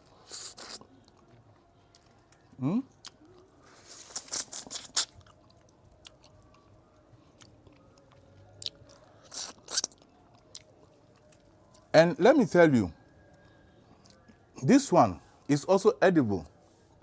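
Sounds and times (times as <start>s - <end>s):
person chewing wet fruit: 0.1s - 11.9s, 13.9s - 14.5s.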